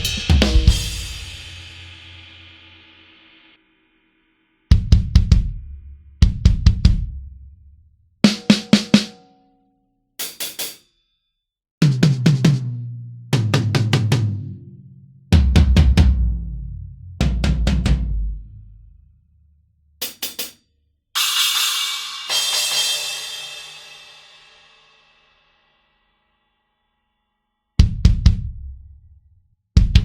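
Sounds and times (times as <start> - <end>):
tom drum hits: 0.0 - 1.4, 17.2 - 18.4
cymbal-like hits: 21.2 - 25.1.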